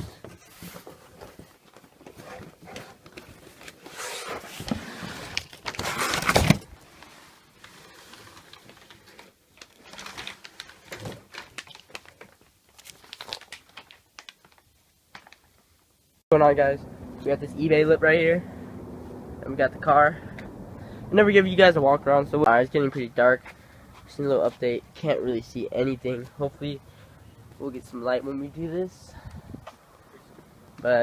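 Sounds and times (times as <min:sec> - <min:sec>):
cardboard packaging rustling: 0:00.0 - 0:15.6.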